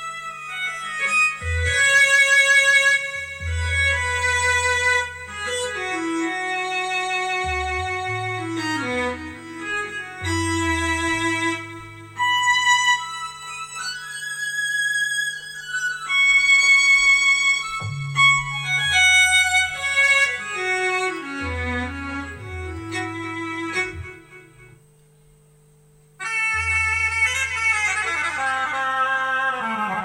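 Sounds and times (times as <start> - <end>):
violin-like synthesizer melody: 0.0 - 24.8
stepping bass line: 7.4 - 12.8, 17.6 - 24.6.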